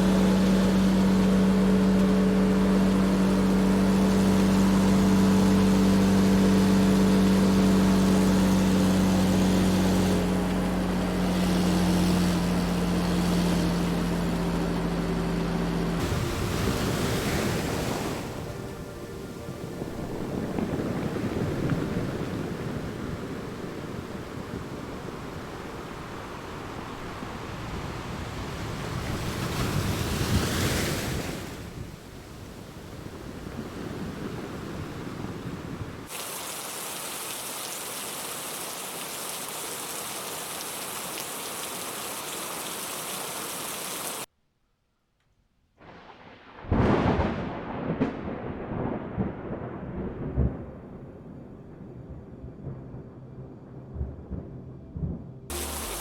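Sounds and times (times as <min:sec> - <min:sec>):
heavy rain: 0:00.0 - 0:30.2, 0:30.9 - 0:44.3, 0:45.8 - 0:53.0, 0:54.2 - 0:56.0
low rolling thunder: 0:16.0 - 0:27.1, 0:45.8 - 0:56.0.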